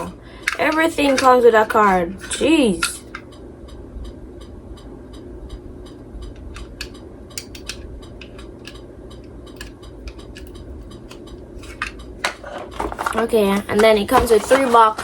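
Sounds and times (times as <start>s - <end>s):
low steady hum: 0.0s - 15.0s
packaging clicks and taps: 9.6s - 15.0s.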